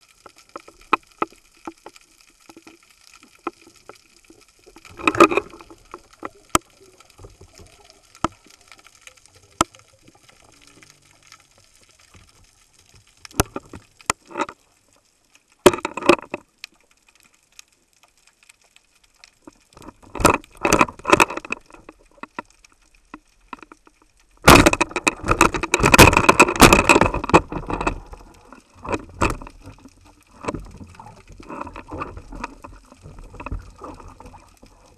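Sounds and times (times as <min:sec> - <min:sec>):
underwater clicks and crackles: 0:00.0 - 0:34.9
bubbling rushing water: 0:03.4 - 0:12.4, 0:19.4 - 0:34.9.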